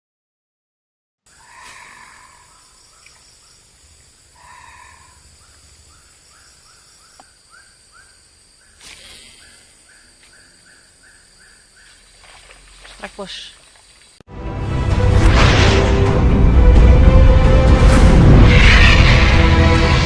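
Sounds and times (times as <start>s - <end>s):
animal call of rising chirps: 1.3s - 3.0s, 4.3s - 12.0s
faint outdoor ambience: 1.3s - 14.2s.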